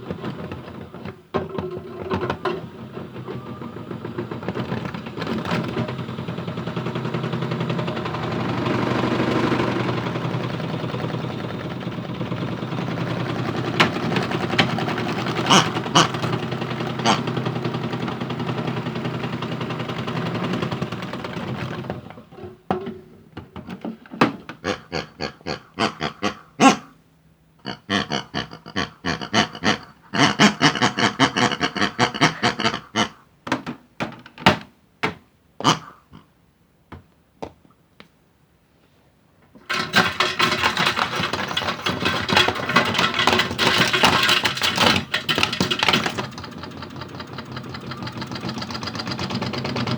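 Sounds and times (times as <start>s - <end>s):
objects knocking in plastic drum: 0.0s - 24.6s, 39.6s - 49.9s
toy washing machine motor hum: 0.0s - 26.4s, 27.7s - 33.1s, 39.6s - 49.9s.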